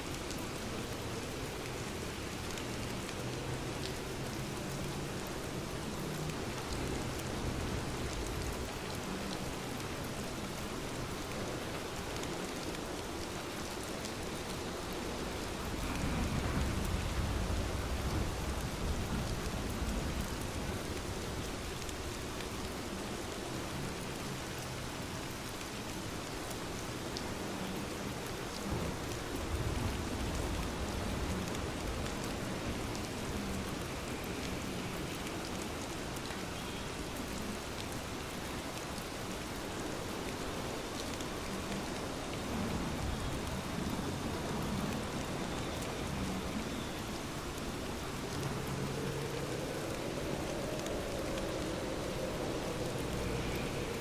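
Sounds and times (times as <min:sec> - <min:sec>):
rain falling: 0:00.0 - 0:54.0
low rumbling: 0:47.6 - 0:54.0.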